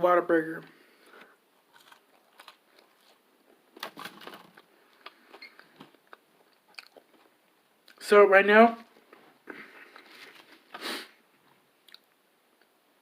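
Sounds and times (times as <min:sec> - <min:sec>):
chewing with small crunches: 0:01.6 - 0:03.7, 0:04.6 - 0:08.0.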